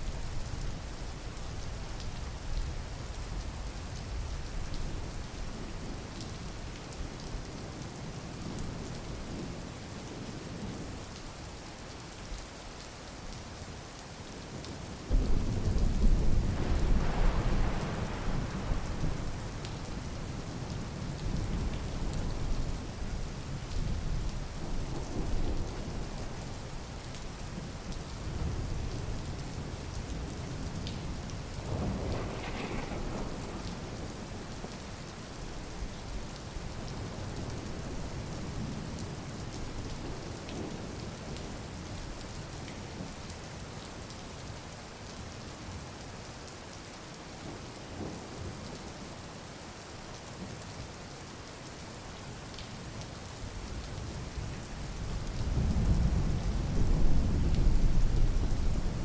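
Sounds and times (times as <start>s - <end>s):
steady rain falling: 0.0s - 59.0s
thunder clap rumbling: 15.1s - 19.9s, 31.6s - 34.8s.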